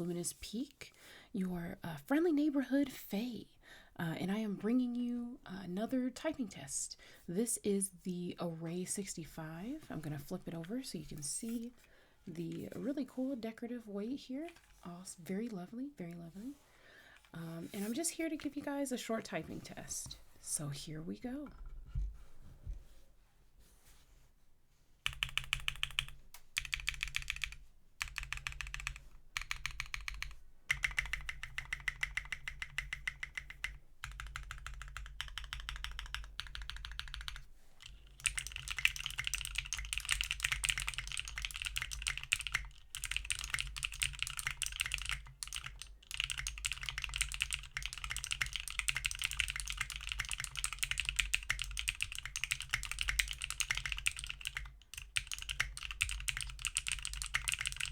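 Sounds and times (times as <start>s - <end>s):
mechanical keyboard typing: 25.1s - 57.9s.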